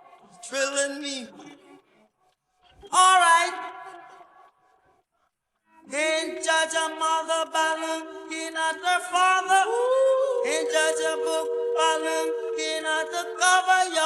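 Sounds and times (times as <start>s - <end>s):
person singing long notes: 8.1s - 14.0s.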